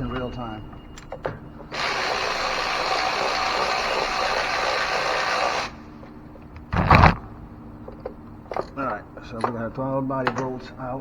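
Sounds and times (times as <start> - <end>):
power ratchet spinning: 1.7 - 5.8.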